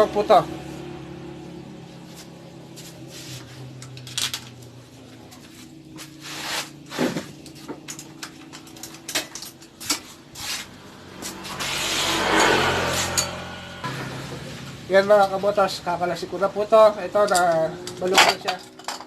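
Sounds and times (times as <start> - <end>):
metal hand tools clinking: 17.1 - 19.0.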